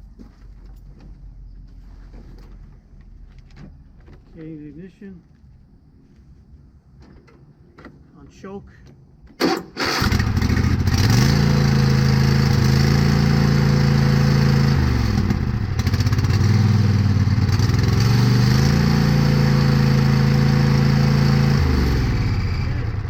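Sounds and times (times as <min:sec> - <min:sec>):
garden tractor engine starting and running: 0:09.3 - 0:23.0
engine revving up and down: 0:09.8 - 0:23.0.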